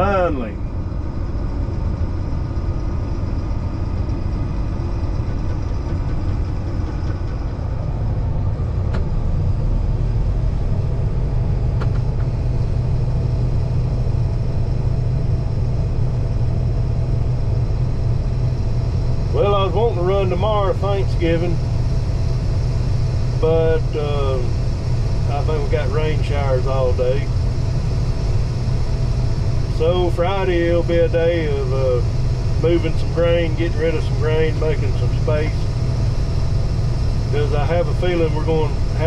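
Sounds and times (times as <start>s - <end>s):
diesel engine droning: 0.0s - 39.0s.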